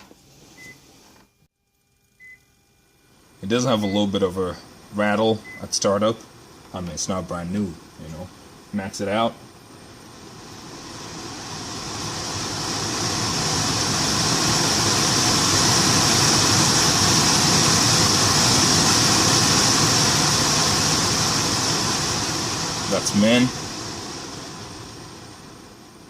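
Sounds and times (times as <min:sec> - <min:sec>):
blower motor whirring: 0:09.4 - 0:26.0.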